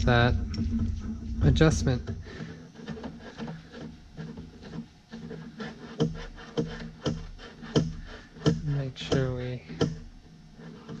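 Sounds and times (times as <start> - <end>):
low hum: 0.0 - 11.0
parts clicking and scraping: 0.1 - 11.0.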